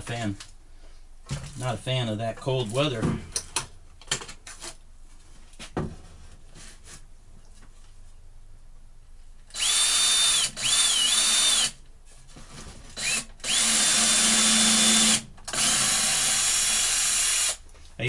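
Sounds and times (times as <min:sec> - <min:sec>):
power drill driving screw into wood: 0:09.5 - 0:11.8, 0:13.0 - 0:17.6.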